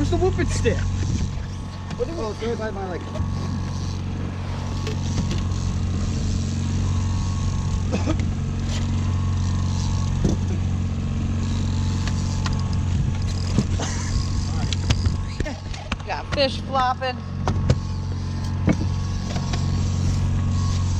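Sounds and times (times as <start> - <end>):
boat engine droning: 0.0 - 20.9
knocks and clatter on boat: 10.2 - 10.6, 18.6 - 19.6.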